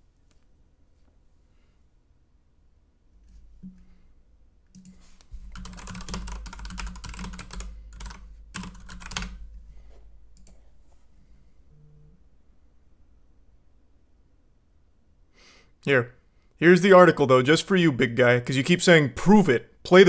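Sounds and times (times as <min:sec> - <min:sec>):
typing on keyboard: 0:04.7 - 0:09.5.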